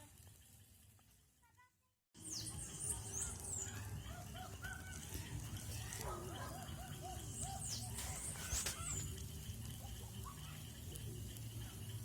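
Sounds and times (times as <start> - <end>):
birds calling: 2.2 - 9.2.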